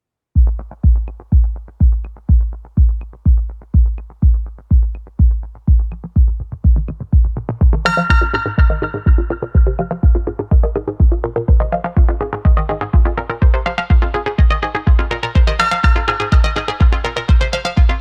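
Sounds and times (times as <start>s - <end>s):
heavy kick drum: 0.4s - 18.0s
ticking hi-hats: 0.4s - 18.0s
bright synth chords: 7.4s - 18.0s.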